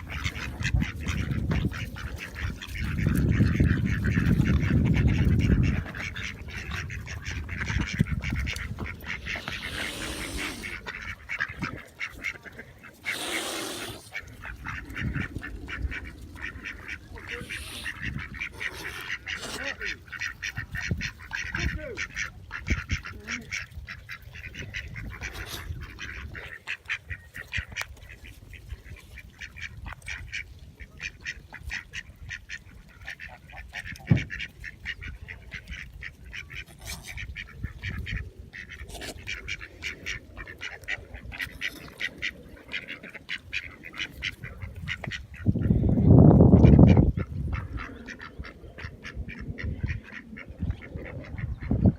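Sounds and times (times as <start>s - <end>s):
swan honking: 8.1s - 20.4s.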